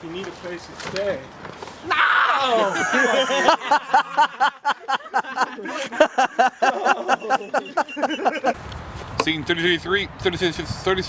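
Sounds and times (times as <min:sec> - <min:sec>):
people laughing: 0:02.4 - 0:08.6.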